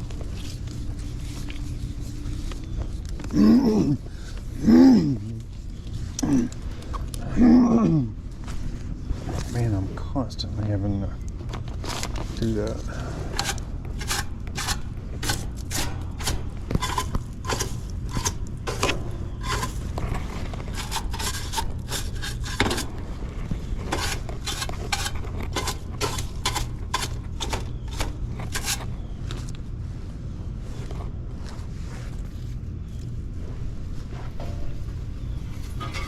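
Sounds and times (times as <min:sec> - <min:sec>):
hard objects clinking and scraping: 0:11.7 - 0:29.2, 0:34.4 - 0:36.0.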